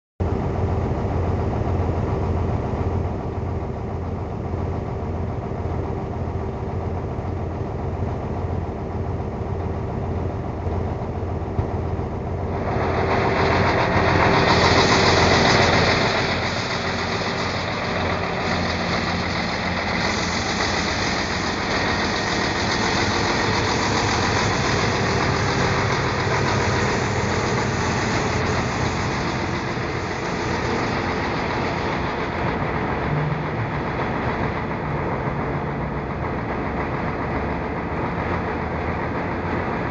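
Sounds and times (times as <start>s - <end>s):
engine idling: 0.2s - 39.9s
loud rushing hiss: 12.4s - 36.0s.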